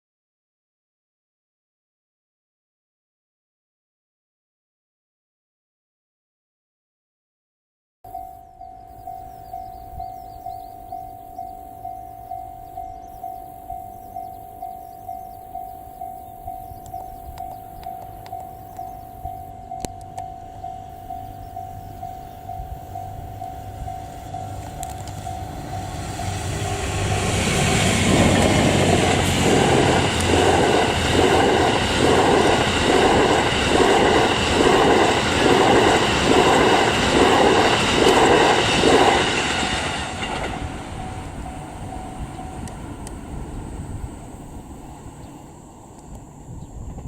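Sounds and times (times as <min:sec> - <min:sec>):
level crossing bell ringing: 0:08.1 - 0:26.6
train rumble: 0:08.1 - 0:47.0.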